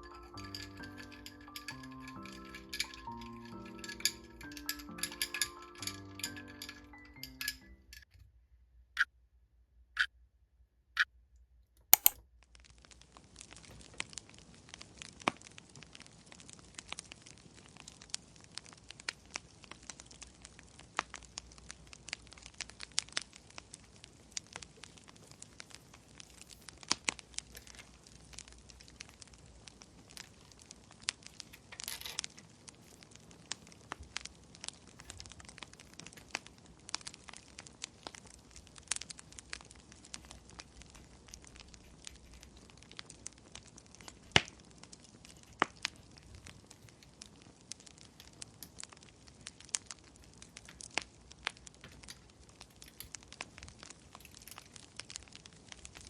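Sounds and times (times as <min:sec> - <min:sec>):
wood fire crackling: 0:00.0 - 0:08.1, 0:12.0 - 0:56.0
isolated clicks: 0:11.9 - 0:12.2.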